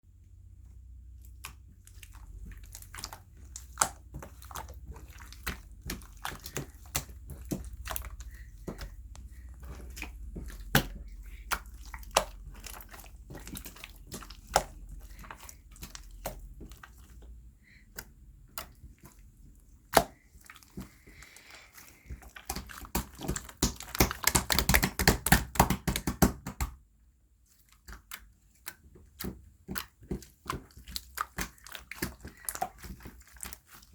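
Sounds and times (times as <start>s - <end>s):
slime crackling rapidly: 1.2s - 17.4s, 18.0s - 26.7s, 27.8s - 33.9s
slime clicking and popping: 22.4s - 26.8s.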